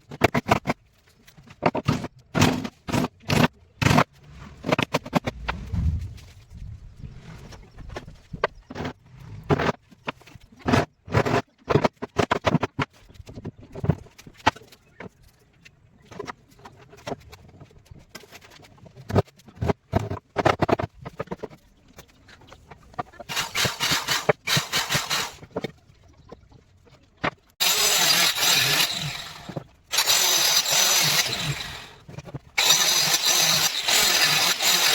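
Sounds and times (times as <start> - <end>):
wood rasping strokes: 27.6 - 32.0, 32.6 - 34.9.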